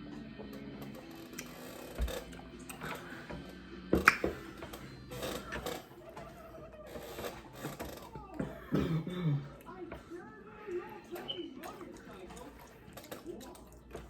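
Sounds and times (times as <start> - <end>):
faint guitar music: 0.0 - 8.4
chewing and mouth smacking: 10.8 - 14.0.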